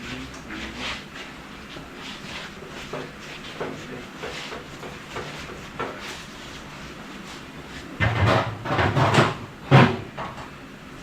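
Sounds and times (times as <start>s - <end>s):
sheet metal clunk: 8.0s - 10.5s.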